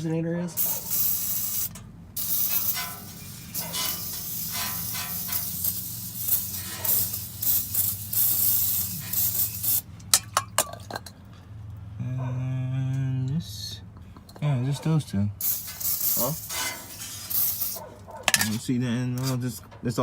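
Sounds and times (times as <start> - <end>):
aerosol spray hissing: 0.6 - 9.8, 15.4 - 17.8.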